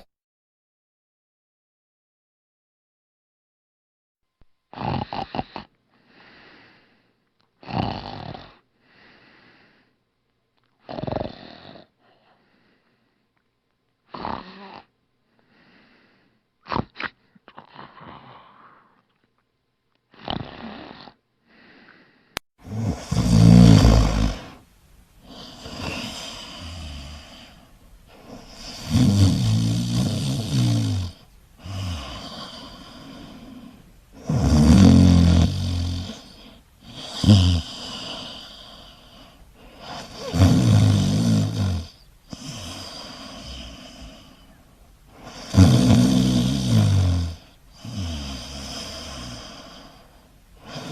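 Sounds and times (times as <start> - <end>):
person snoring: 4.7 - 6.9, 7.6 - 9.8, 10.8 - 12.4, 14.1 - 14.9, 15.5 - 19.0, 22.6 - 24.6, 25.2 - 50.9
soft breath: 5.3 - 7.3, 8.8 - 10.0, 11.8 - 13.4, 14.6 - 16.5, 21.4 - 22.4, 23.8 - 28.9, 31.1 - 34.2, 36.0 - 40.3, 41.9 - 45.4, 47.4 - 50.9.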